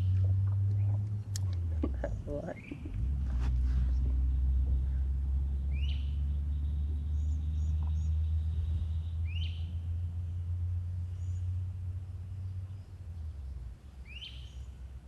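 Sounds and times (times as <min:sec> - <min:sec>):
birds calling: 0:00.0 - 0:11.6, 0:12.4 - 0:14.9
low rumble: 0:00.0 - 0:15.0
high bird chirps: 0:05.5 - 0:09.8.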